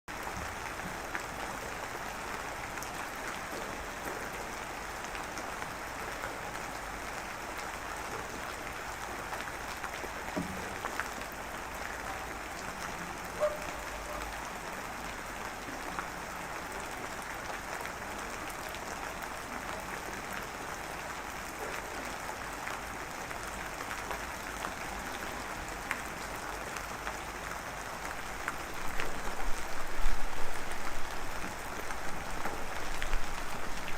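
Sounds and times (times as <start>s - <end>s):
steady rain hiss: 0.1s - 33.9s
raindrop taps: 10.3s - 11.1s.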